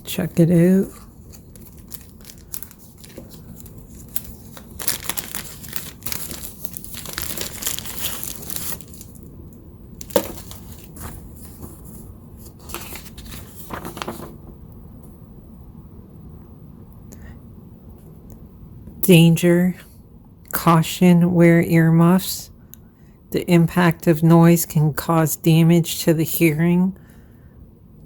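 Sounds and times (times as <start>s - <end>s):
paper and packaging crinkling: 0.8s - 9.3s, 10.0s - 14.4s.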